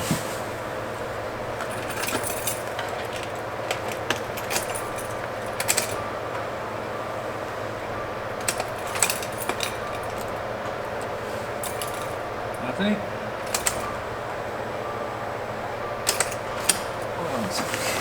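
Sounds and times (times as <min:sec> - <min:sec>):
fuse box clicks and rattles: 0:01.6 - 0:06.0, 0:13.4 - 0:14.0.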